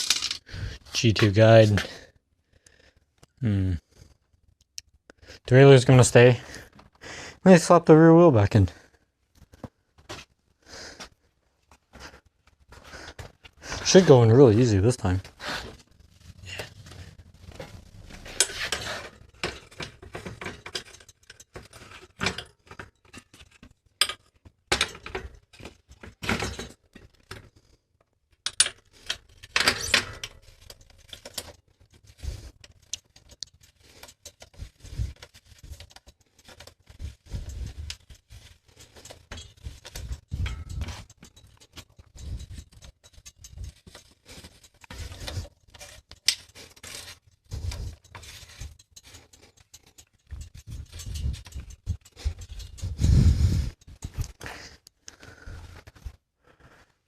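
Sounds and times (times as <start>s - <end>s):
metal bicycle parts clinking: 0.0s - 1.4s, 13.0s - 56.1s.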